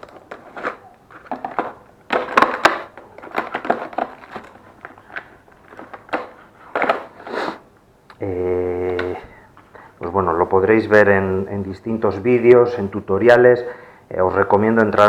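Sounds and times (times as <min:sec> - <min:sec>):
packaging rustling and crinkling: 0:00.0 - 0:08.2, 0:14.2 - 0:15.0.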